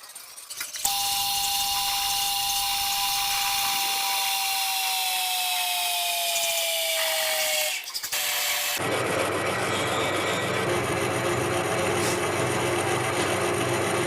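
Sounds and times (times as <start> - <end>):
metal lathe whine: 0.8 - 5.0, 8.2 - 13.9.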